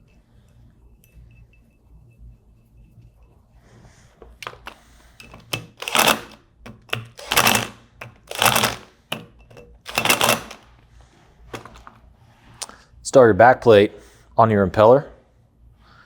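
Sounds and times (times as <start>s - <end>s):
power driver rattling bursts: 4.4s - 10.7s
tool clicks: 4.4s - 10.7s.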